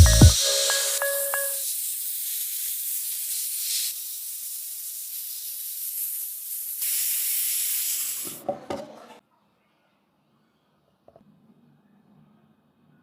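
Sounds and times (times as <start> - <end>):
high hiss of spraying: 0.0 - 8.4.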